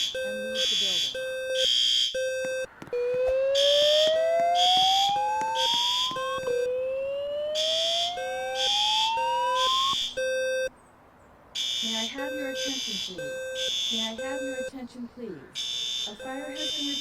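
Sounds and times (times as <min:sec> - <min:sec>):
voice announcements: 0:00.0 - 0:01.6, 0:11.8 - 0:17.0
pulsing alarm horns: 0:00.0 - 0:10.7, 0:11.6 - 0:14.8, 0:15.6 - 0:17.0
rising whoop alarm tone: 0:03.0 - 0:10.0.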